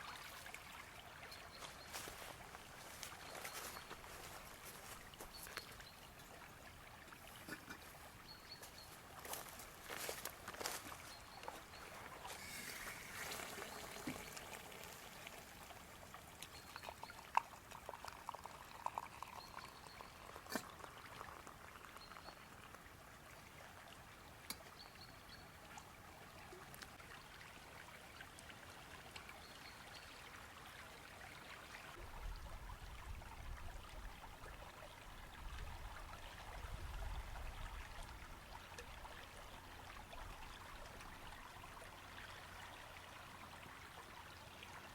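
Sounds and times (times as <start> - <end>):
river water flowing: 0.0 - 31.8.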